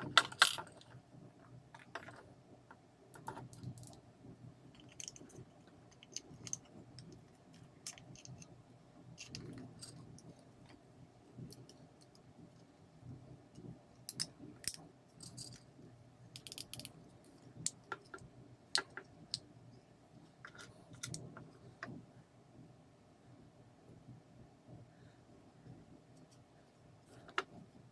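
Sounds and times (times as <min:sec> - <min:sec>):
small hard parts clicking and rattling: 0:00.0 - 0:01.0, 0:03.1 - 0:04.0, 0:04.7 - 0:08.6, 0:09.2 - 0:10.8, 0:13.6 - 0:15.7, 0:16.4 - 0:19.4.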